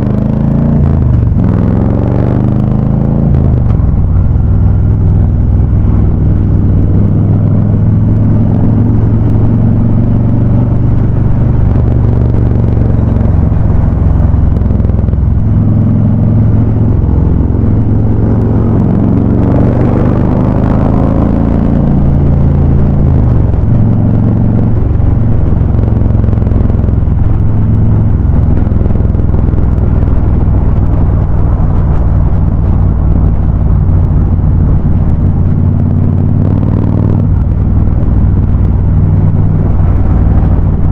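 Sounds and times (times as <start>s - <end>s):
motorcycle exhaust rumble: 0.0s - 40.9s.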